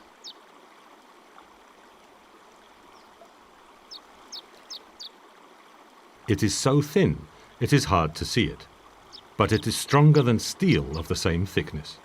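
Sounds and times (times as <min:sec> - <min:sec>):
stream running water: 0:00.0 - 0:12.0
small bird chirping: 0:00.2 - 0:00.4, 0:02.9 - 0:05.2, 0:09.0 - 0:10.3.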